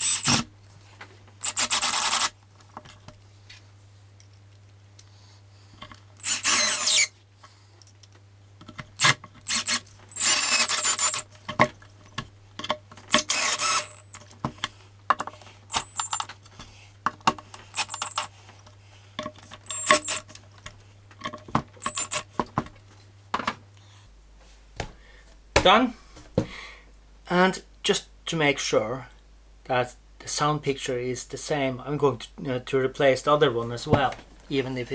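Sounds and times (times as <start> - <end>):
tool scraping on tweeter: 6.2 - 7.1, 9.4 - 11.3, 13.1 - 14.3, 15.7 - 16.3, 17.6 - 18.4, 19.6 - 20.4, 21.8 - 22.4.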